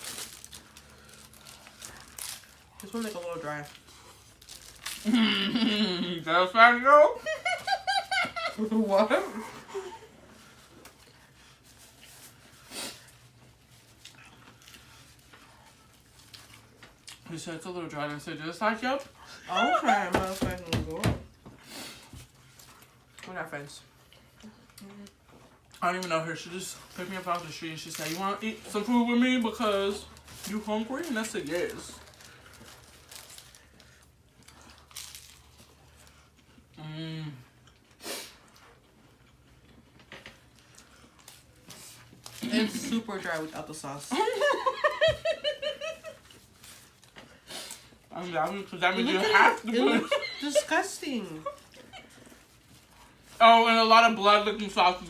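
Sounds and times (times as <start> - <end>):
people chewing food: 0.0 - 6.3, 7.3 - 54.7
chewing with faint crunches: 10.2 - 17.3, 23.9 - 26.2, 31.7 - 42.4
person humming: 36.8 - 37.4.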